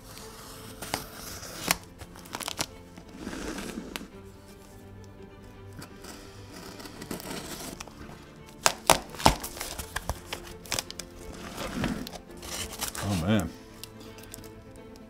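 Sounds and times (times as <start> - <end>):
quiet background music: 0.0 - 15.0
packaging crinkling and rustling: 0.6 - 2.7, 8.5 - 14.5
sharp cracks and snaps: 7.7 - 11.2.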